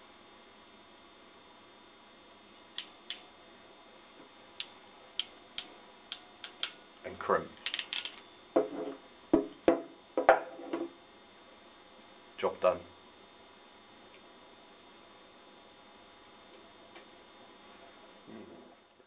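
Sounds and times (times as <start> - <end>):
crimping tool metallic clicks: 4.6 - 6.8.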